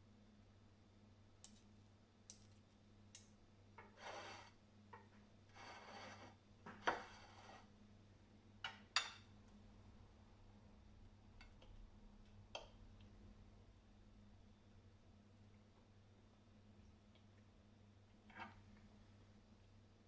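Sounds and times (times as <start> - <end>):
faint steady hum: 0.0 - 20.0
rubbing or scraping strokes: 4.0 - 4.6.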